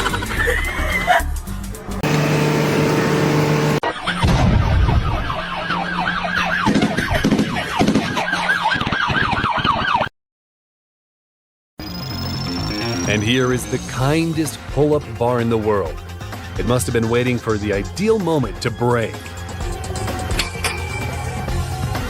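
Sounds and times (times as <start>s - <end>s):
siren yelping: 4.7s - 10.1s.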